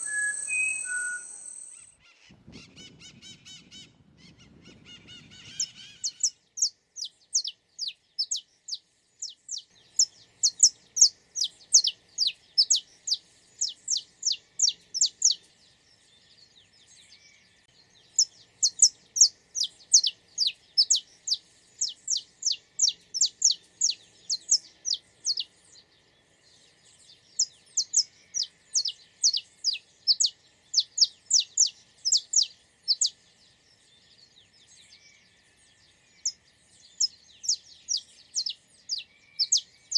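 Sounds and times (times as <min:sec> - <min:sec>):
bird singing high sliding notes: 0:00.0 - 0:02.0.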